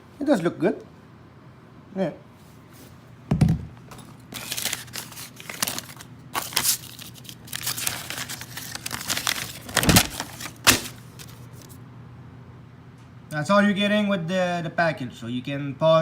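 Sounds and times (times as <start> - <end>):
packaging crinkling and rustling: 3.9 - 11.8.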